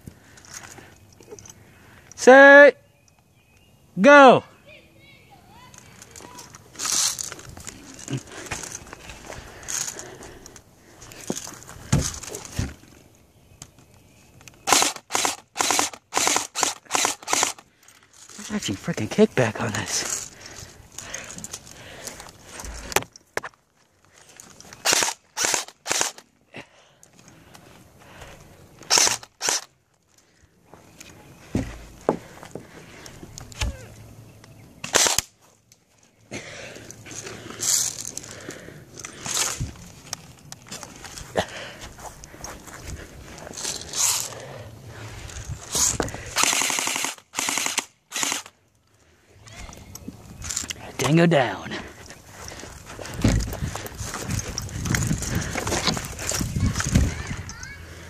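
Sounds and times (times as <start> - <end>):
crunching and rustling: 5.7 - 13.2, 34.9 - 46.7
airsoft gun firing in bursts: 14.7 - 17.6, 24.8 - 26.2, 28.9 - 29.7, 34.9 - 35.3, 46.4 - 48.5.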